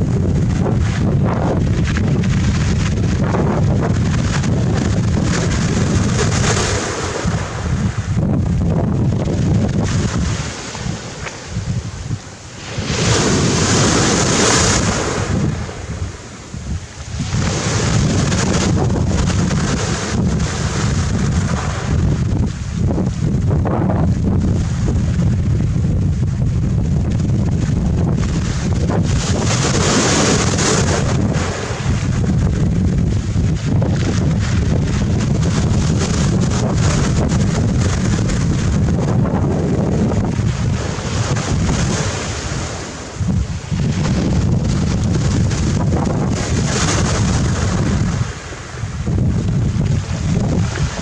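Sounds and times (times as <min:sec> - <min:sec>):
waves breaking on pebble beach: 0:00.0 - 0:23.5, 0:24.4 - 0:51.0
wind buffeting microphone: 0:00.0 - 0:51.0.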